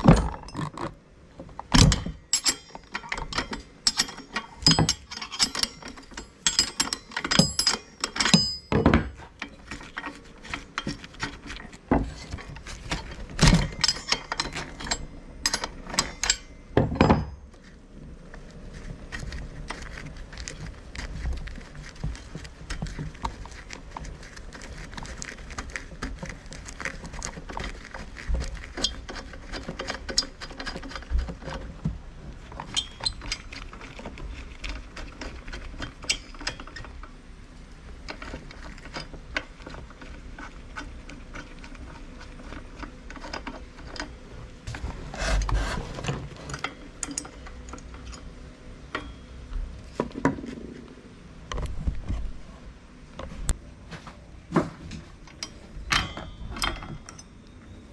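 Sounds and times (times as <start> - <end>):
hand tools clicking and knocking: 0.0 - 17.6, 19.0 - 31.9, 32.5 - 37.1, 45.2 - 48.3.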